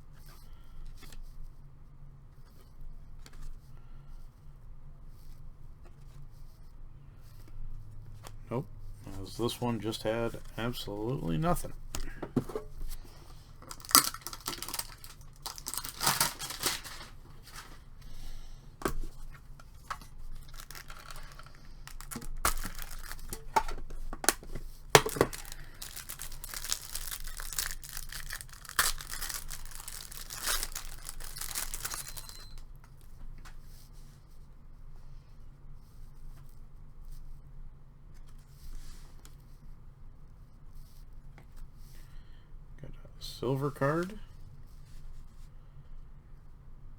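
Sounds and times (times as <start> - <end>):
cards crinkling: 9.1 - 32.6
card packs being torn open: 13.6 - 17.8, 19.8 - 32.6.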